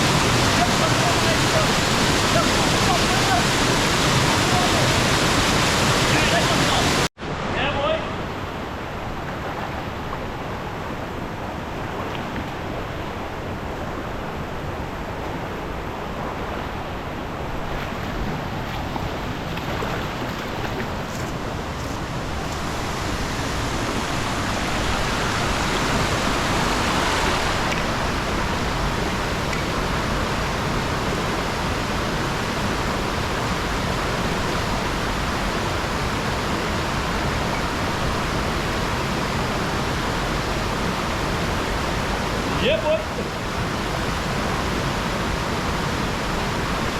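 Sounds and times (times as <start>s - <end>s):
waterfall and river rushing: 0.0s - 46.9s.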